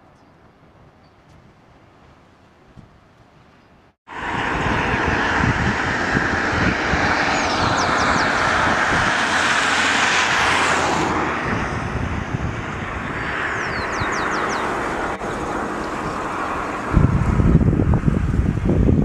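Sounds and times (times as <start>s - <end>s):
loud steady rushing noise: 4.1s - 19.0s.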